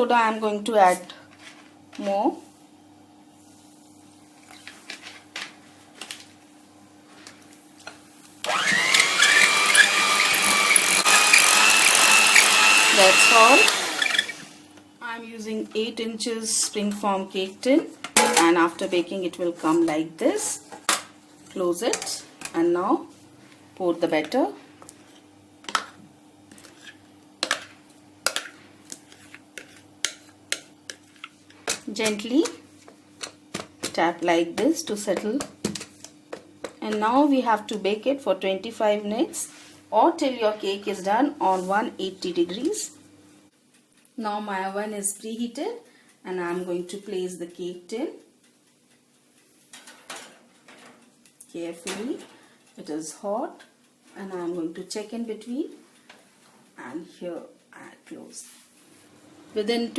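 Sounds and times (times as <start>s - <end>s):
electric hand beater whining: 8.4s - 14.6s.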